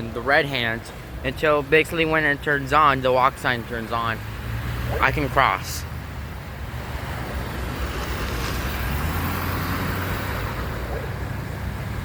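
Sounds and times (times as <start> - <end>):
low traffic engine rumble: 0.0 - 12.0
vehicle passing: 3.9 - 12.0.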